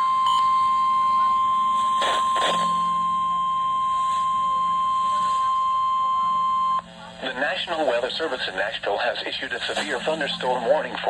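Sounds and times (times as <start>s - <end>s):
steady alarm tone: 0.0s - 8.8s
static crackles: 1.0s - 11.0s.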